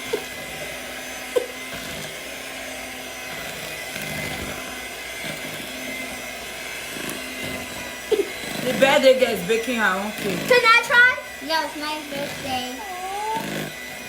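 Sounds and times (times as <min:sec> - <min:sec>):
electric hand mixer running: 0:00.0 - 0:14.0.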